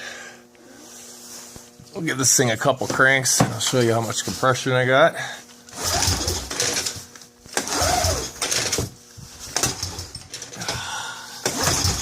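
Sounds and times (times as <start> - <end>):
recoil starter rope pulls: 5.7 - 10.7, 11.4 - 12.0.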